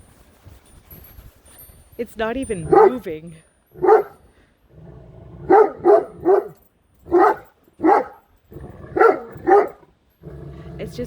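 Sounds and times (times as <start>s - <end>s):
dog barking deeply: 2.7s - 3.0s, 3.8s - 4.2s, 4.8s - 10.8s.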